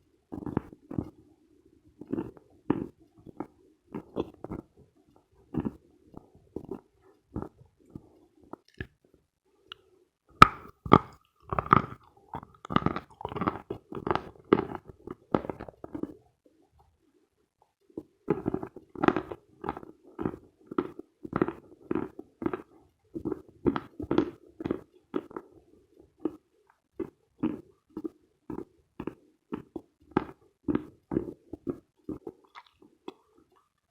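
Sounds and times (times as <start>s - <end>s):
chalk crunching and chewing: 10.9s - 16.2s, 18.2s - 25.6s, 27.0s - 33.8s.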